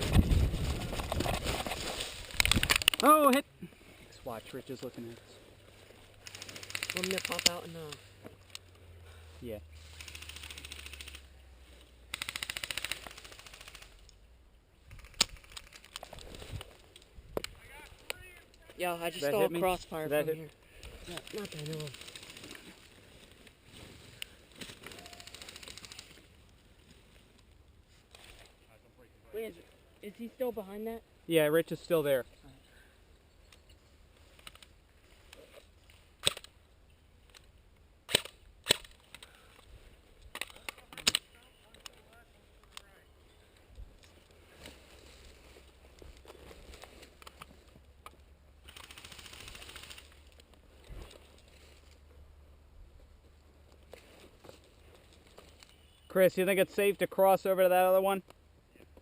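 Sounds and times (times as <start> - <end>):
airsoft gun automatic bursts: 6.2 - 7.8, 9.9 - 11.3, 12.1 - 14.0, 20.9 - 22.6, 24.9 - 26.2, 48.6 - 50.1.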